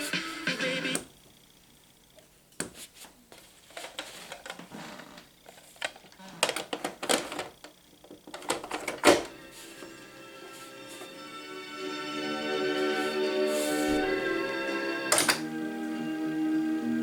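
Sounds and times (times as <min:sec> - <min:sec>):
mechanical clicks and clunks: 0:15.1 - 0:15.4.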